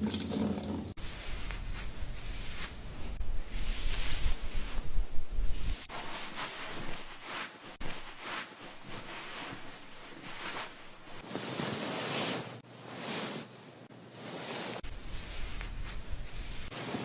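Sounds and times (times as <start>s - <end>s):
fingers scrubbing wet hair: 14.8s - 17.0s.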